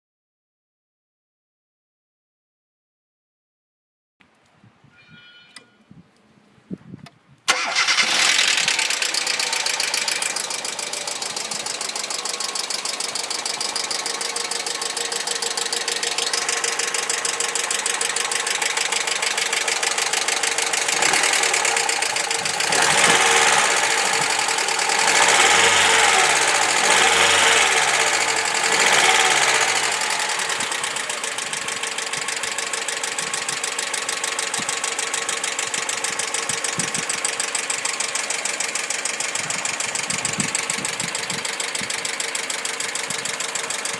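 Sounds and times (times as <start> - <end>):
engine revving: 7.5 - 39.3
car engine starting and idling: 7.5 - 43.9
rapid valve lifter ticking: 9.0 - 43.9.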